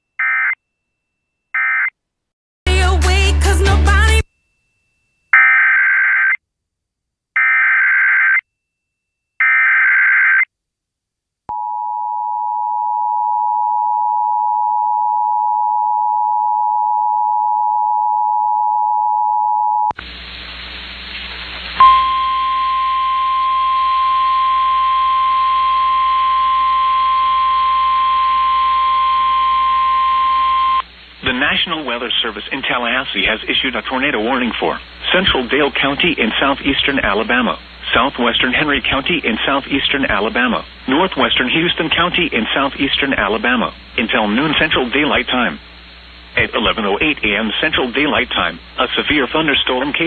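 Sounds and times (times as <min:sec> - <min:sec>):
radio hiss: 0:20.0 - 0:22.8, 0:30.2 - 0:50.0
steady warning alarm tone: 0:21.8 - 0:30.8
two-tone alert signal: 0:21.8 - 0:30.8.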